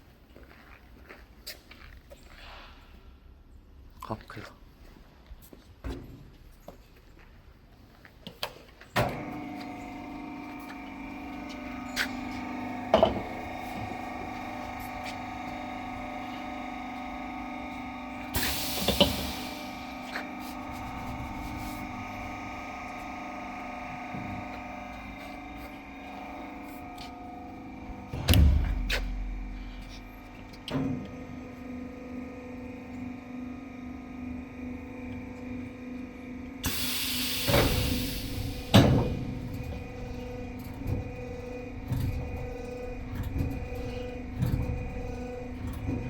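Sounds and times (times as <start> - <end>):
heavy thump with rumble: 27.9 - 31.0
sharp knocks: 28.1 - 29.6.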